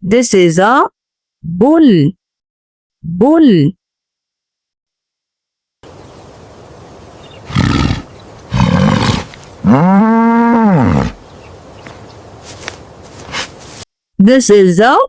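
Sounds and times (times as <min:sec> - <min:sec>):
bull bellowing: 0:07.4 - 0:11.5.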